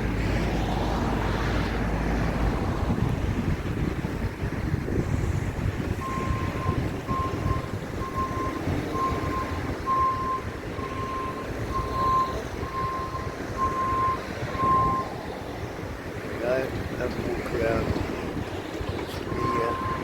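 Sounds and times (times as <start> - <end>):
constant low rumble: 0.0 - 20.0
reversing alarm beeping: 6.0 - 15.1, 19.1 - 20.0.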